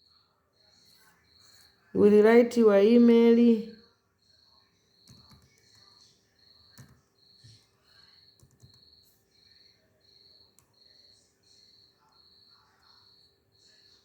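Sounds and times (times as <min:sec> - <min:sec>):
cricket chirping: 0:04.2 - 0:14.0.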